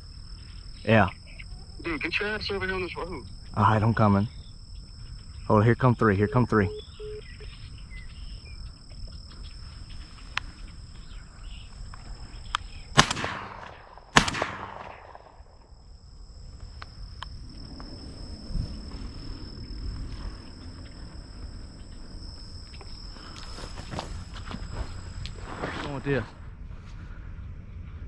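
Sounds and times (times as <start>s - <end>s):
insects droning: 0.0s - 28.0s
shotgun shots with echo: 12.9s - 15.6s.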